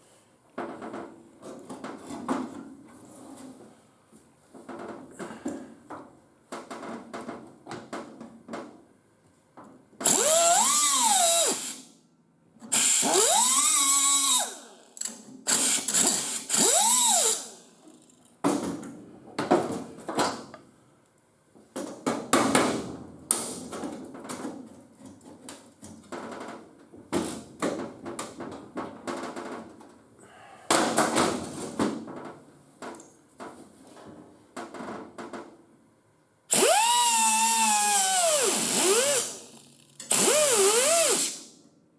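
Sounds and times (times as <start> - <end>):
power drill spinning: 10.0 - 11.8, 12.7 - 14.6, 15.5 - 17.6, 36.5 - 41.4.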